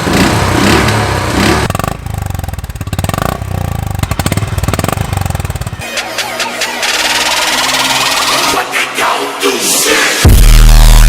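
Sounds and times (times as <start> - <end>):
motorcycle exhaust pulses: 0.0 - 5.8
music: 5.8 - 11.0.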